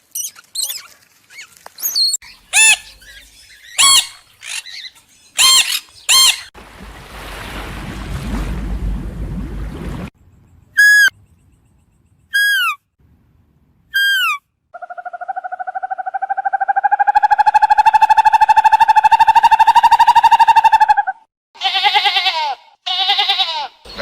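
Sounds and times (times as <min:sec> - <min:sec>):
animal calling: 0:14.0 - 0:24.0.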